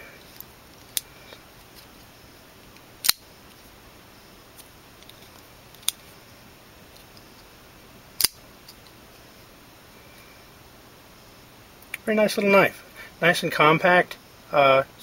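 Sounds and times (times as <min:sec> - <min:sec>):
folding knife metallic clicks: 0:08.2 - 0:08.4.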